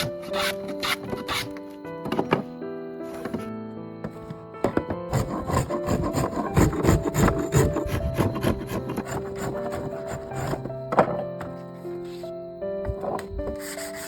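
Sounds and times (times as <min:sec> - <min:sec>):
wood being scraped by hand: 0:00.0 - 0:01.6, 0:04.8 - 0:11.0, 0:12.9 - 0:14.0
soft background music: 0:00.0 - 0:14.0.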